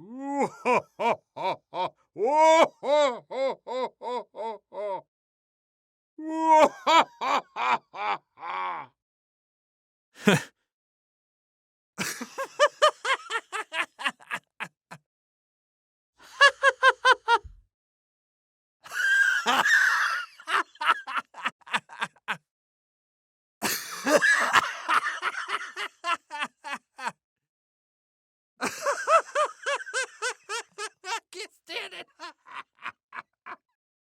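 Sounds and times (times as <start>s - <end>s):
person laughing: 0.1s - 5.0s, 6.5s - 8.9s, 10.2s - 10.5s, 12.0s - 15.0s, 18.9s - 22.4s, 23.6s - 27.2s, 28.6s - 33.7s.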